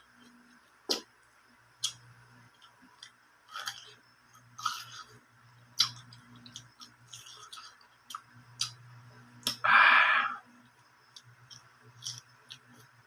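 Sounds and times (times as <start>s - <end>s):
faint low hum: 0.0s - 13.0s
crunchy bites and chewing: 3.0s - 4.0s, 5.8s - 8.8s, 11.5s - 12.9s.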